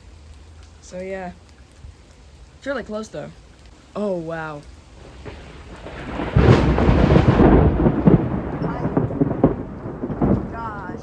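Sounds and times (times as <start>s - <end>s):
rain falling: 0.0s - 11.0s
thunder crack and rumble: 5.0s - 11.0s.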